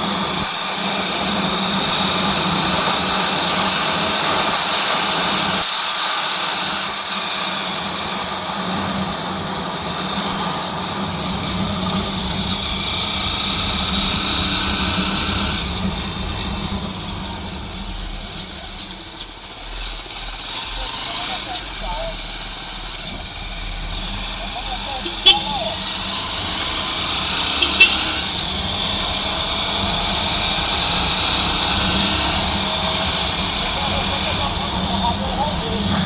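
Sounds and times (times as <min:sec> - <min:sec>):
motorcycle engine running: 0:00.0 - 0:36.0
wind and road noise: 0:00.0 - 0:36.0.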